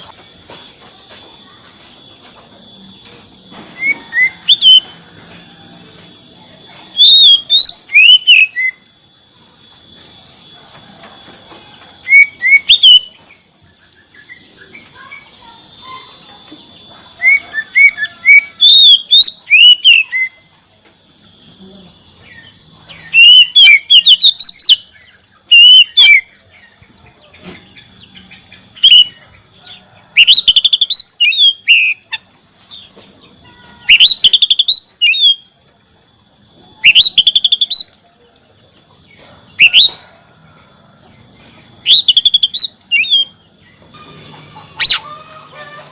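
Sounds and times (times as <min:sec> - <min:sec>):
faint high-pitched hum: 0:00.0 - 0:45.9
bird singing chirps and whistles: 0:03.6 - 0:05.2, 0:06.8 - 0:09.0, 0:12.0 - 0:20.5, 0:21.6 - 0:26.8, 0:27.7 - 0:29.2, 0:30.2 - 0:32.9, 0:33.8 - 0:35.6, 0:36.7 - 0:38.0, 0:39.5 - 0:40.1, 0:41.8 - 0:43.8.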